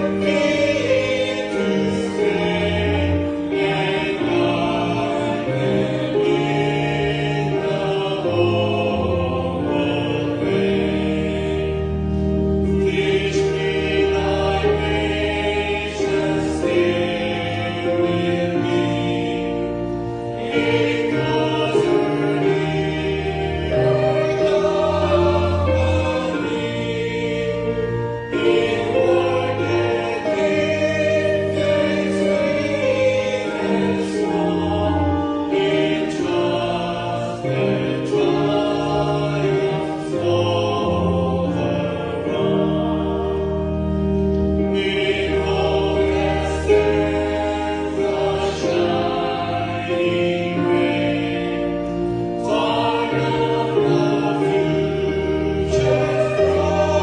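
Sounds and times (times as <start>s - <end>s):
congregation singing a hymn: 0.0s - 57.0s.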